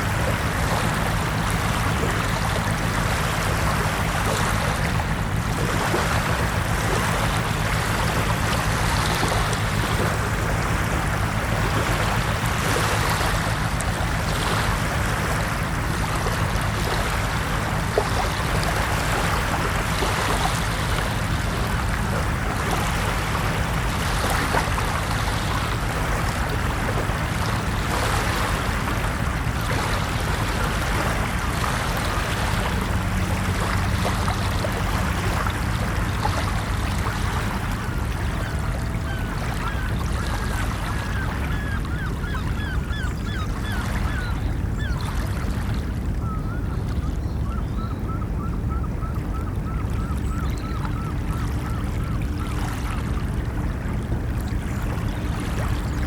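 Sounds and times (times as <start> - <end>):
ocean surf washing: 0.0 - 56.0.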